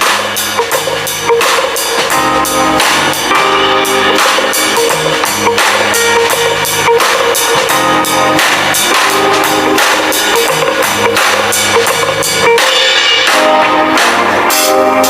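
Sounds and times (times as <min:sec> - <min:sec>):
background music with drum beat: 0:00.0 - 0:15.0.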